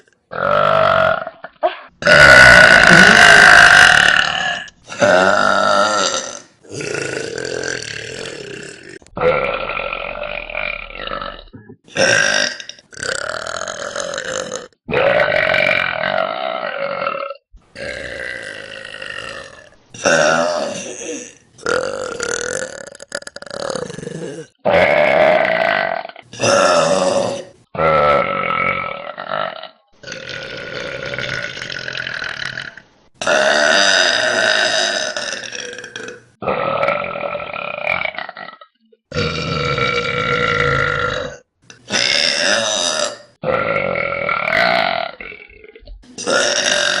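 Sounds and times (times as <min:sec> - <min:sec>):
women burping: 0:00.4 - 0:10.1.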